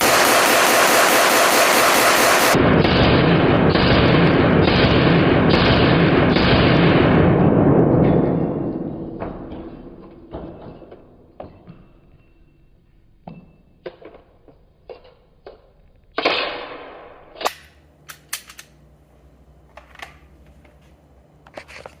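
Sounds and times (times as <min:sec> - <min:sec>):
gunshots with echo: 0:00.0 - 0:09.1.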